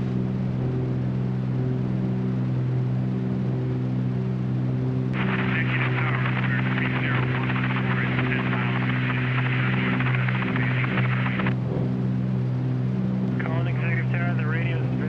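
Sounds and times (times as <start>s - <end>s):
aircraft engines droning: 0.0s - 15.0s
radio static hiss: 5.2s - 11.6s.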